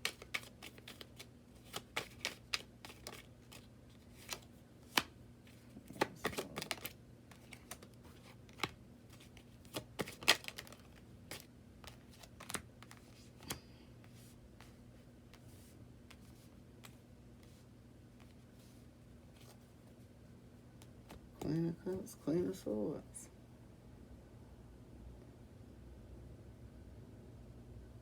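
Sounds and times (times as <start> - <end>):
cards being shuffled: 0.0 - 17.6
faint steady hum: 0.0 - 28.0.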